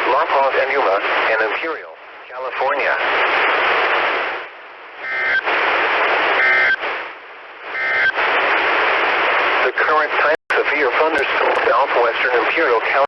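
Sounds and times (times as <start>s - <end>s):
radio static hiss: 0.0s - 13.0s
warbling data tones: 5.0s - 5.5s, 6.4s - 6.8s, 7.7s - 8.2s.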